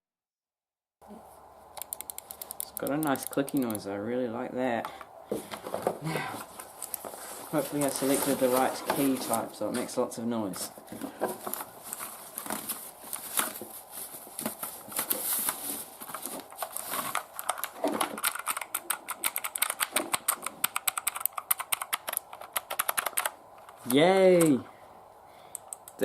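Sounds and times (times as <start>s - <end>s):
mechanical keyboard typing: 1.8s - 3.8s, 17.1s - 24.6s.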